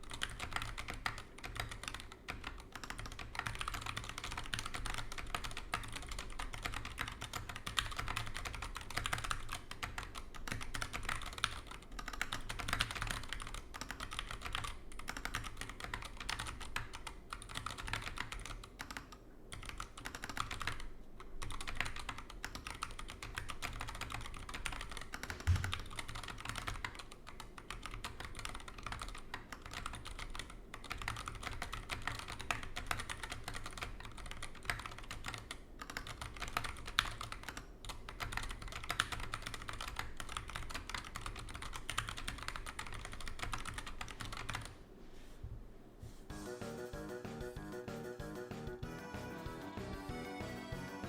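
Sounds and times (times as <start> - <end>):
deep keyboard thump: 25.2 - 26.1.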